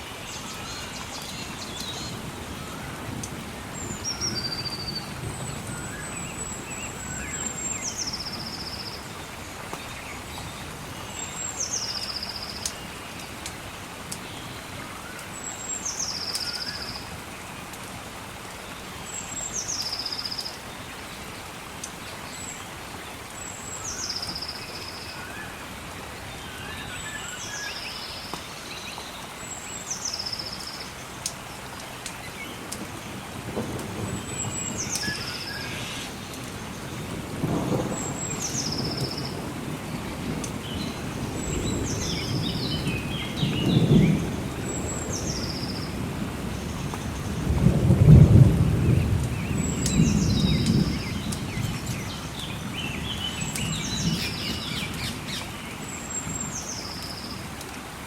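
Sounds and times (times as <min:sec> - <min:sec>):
steady hiss of rain: 0:00.0 - 0:58.0
songbird calling with trill: 0:03.8 - 0:13.0, 0:34.2 - 0:37.0, 0:49.0 - 0:57.4.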